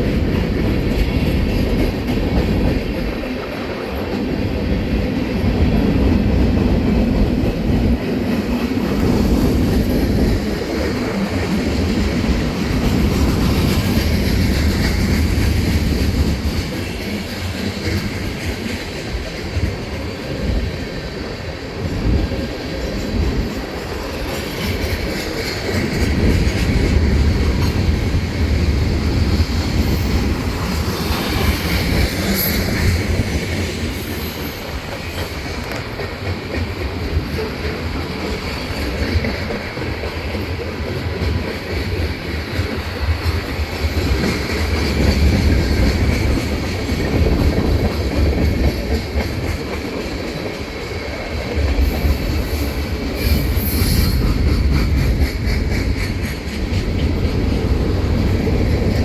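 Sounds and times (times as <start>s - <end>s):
freight train rumbling past: 0.0s - 59.0s
train wheel squeals: 22.0s - 36.2s, 42.6s - 59.0s.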